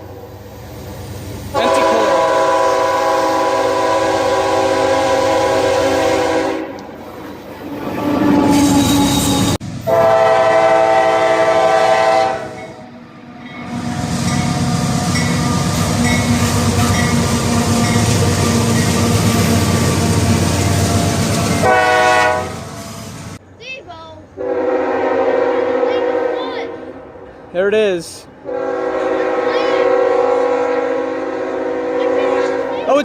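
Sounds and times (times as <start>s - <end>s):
train engine drone: 0.0s - 33.0s
locomotive air horn blasts: 1.5s - 6.8s, 8.0s - 12.8s, 20.8s - 23.2s, 24.4s - 26.9s, 28.4s - 32.8s
train wheel clatter: 13.4s - 21.7s.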